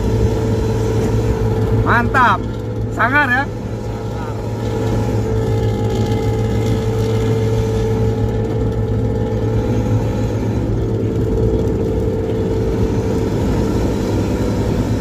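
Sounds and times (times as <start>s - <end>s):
bus exhaust droning: 0.0s - 15.0s.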